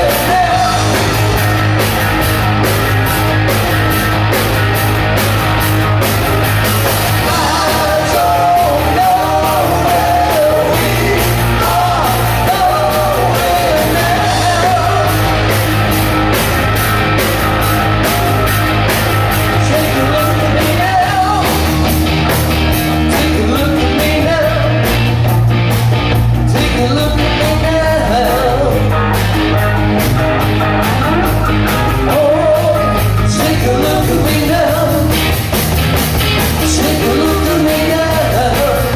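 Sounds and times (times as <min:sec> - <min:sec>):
person singing: 0:00.0 - 0:01.4, 0:07.1 - 0:15.6, 0:19.5 - 0:21.9, 0:23.0 - 0:25.0, 0:26.5 - 0:29.2, 0:30.8 - 0:35.3, 0:36.6 - 0:38.9
bass: 0:00.0 - 0:38.9
drums: 0:00.0 - 0:38.9
guitar: 0:00.0 - 0:38.9.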